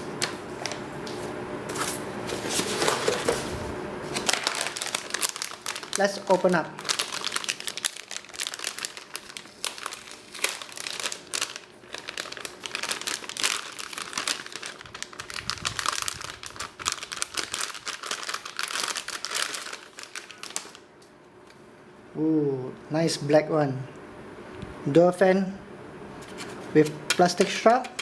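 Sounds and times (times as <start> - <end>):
plastic packaging crinkling: 2.4 - 20.9.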